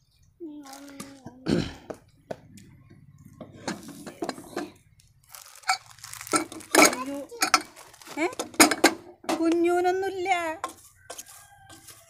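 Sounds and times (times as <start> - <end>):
rustling: 2.5 - 8.8
metal cookware clinking: 3.4 - 4.8, 5.6 - 9.8.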